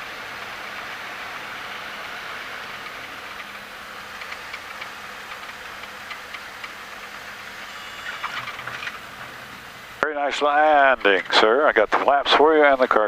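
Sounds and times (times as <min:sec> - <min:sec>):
airplane engine and airflow hiss: 0:00.0 - 0:13.0
light ticks and rattles: 0:02.7 - 0:06.8.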